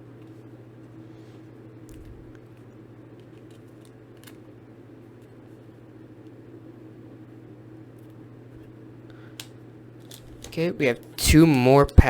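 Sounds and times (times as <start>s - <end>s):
low background hum: 0.0s - 12.0s
trading cards being handled: 1.2s - 5.7s, 10.0s - 12.0s.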